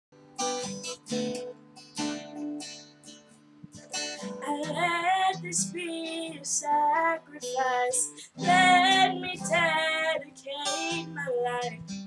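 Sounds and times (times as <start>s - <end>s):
acoustic guitar strumming: 0.1s - 12.0s
person singing: 4.2s - 12.0s.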